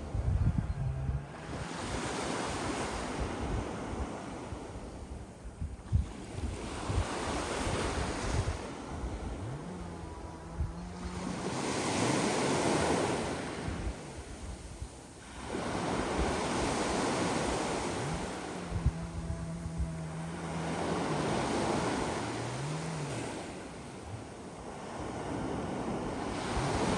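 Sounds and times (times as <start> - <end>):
wind buffeting microphone: 0.0 - 26.9
waves washing up a pebble beach: 11.5 - 18.7.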